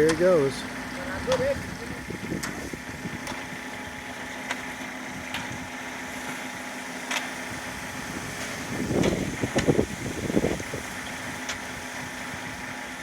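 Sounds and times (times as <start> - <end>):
truck engine running: 0.0 - 13.0.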